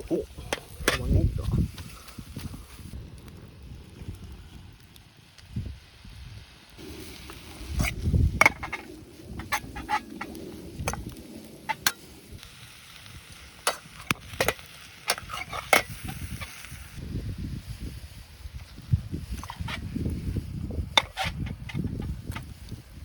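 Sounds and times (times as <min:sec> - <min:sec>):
sizzling hiss: 0:00.0 - 0:23.0.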